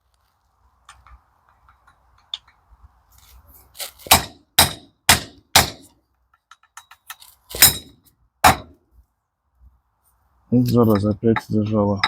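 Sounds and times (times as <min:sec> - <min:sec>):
metallic knocks on gearbox parts: 0:04.1 - 0:08.8.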